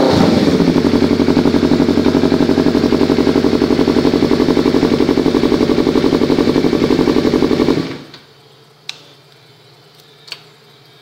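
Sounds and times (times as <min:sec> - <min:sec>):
motorcycle engine idling: 0:00.1 - 0:08.1.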